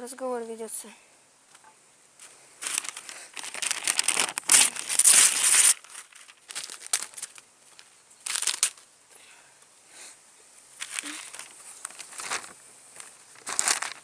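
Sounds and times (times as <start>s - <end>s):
paper being crumpled: 2.6s - 8.8s, 10.8s - 14.0s.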